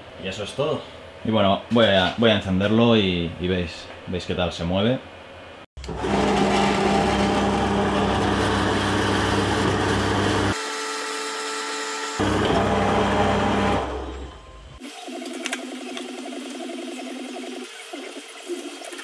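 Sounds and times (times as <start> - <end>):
lathe motor humming: 5.8 - 10.6, 12.2 - 14.3.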